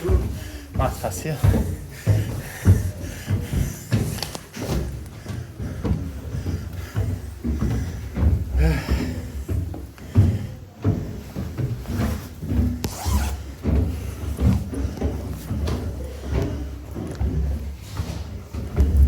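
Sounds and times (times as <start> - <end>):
person panting hard: 0.0 - 10.7
thudding footsteps on stairs: 0.0 - 19.0.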